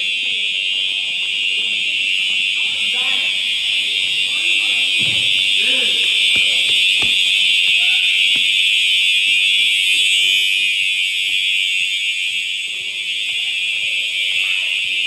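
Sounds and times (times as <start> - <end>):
fire alarm high-pitched tone: 0.0 - 15.0
knocks: 6.3 - 8.6.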